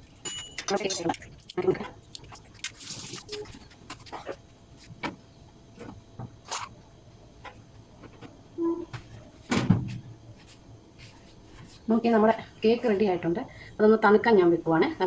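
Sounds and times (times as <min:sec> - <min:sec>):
dishes and utensils clinking: 0:00.2 - 0:01.3.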